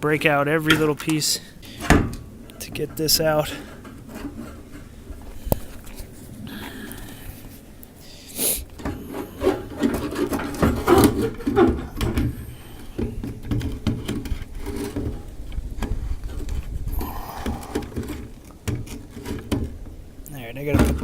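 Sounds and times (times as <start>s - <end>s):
metal scraping and rubbing: 0.6s - 16.5s.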